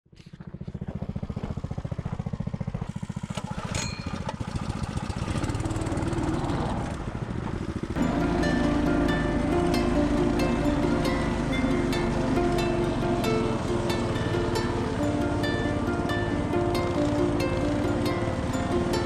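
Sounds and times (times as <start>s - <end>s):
small engine running: 0.1s - 19.0s
music: 8.0s - 19.0s.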